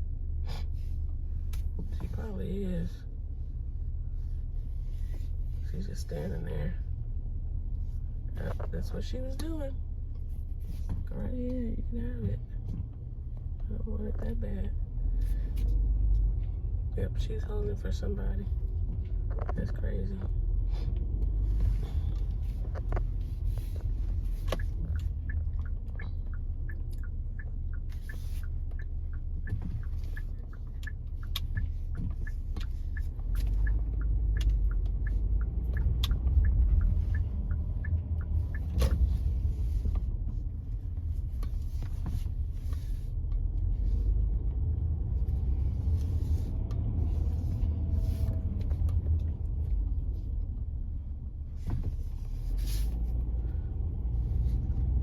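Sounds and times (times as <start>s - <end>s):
car interior rumble: 0.0s - 55.0s
turn signal clicking: 18.0s - 55.0s.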